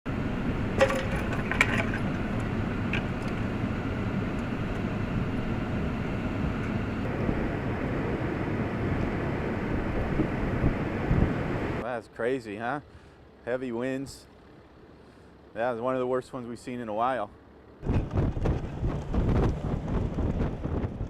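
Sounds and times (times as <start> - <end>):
wind blowing across microphone: 4.4 - 11.8, 17.8 - 21.0.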